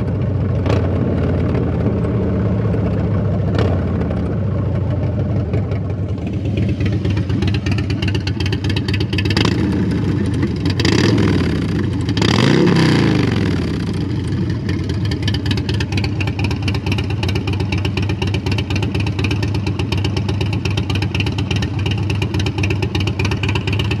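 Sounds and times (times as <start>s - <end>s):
motorcycle engine idling and revving: 0.0s - 24.0s.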